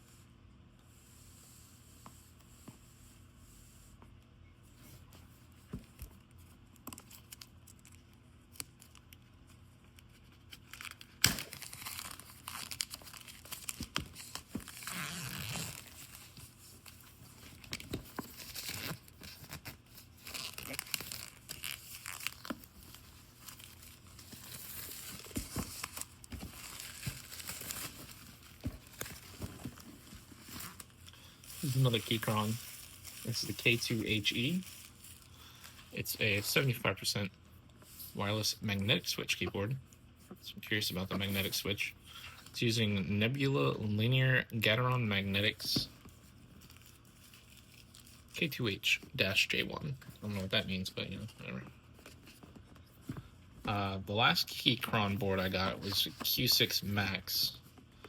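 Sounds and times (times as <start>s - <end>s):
paper and plastic rustling: 8.8s - 37.2s, 54.4s - 58.0s.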